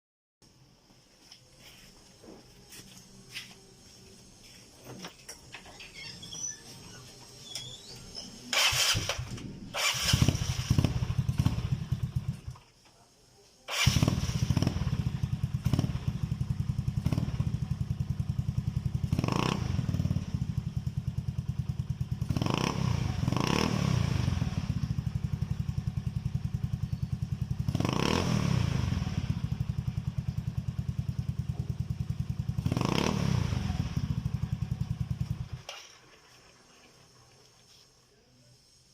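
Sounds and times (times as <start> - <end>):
scooter engine starting and idling: 5.0 - 12.6, 13.7 - 37.5.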